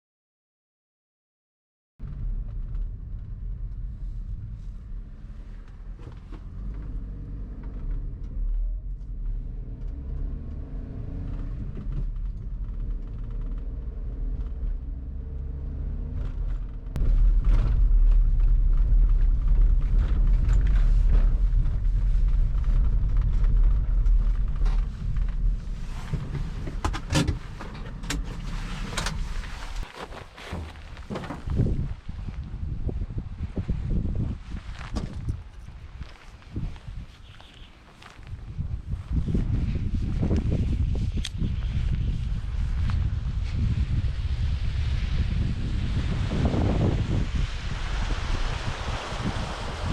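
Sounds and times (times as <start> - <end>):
low rumble: 2.0 - 49.9.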